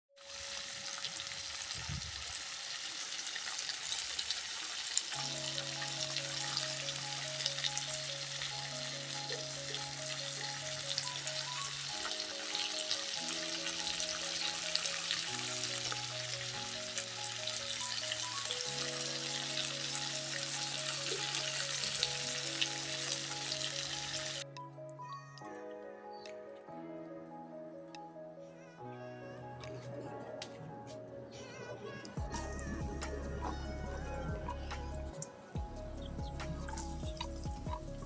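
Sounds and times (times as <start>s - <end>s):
food sizzling in a hot pan: 0.2s - 24.4s
soft background music: 5.1s - 38.0s.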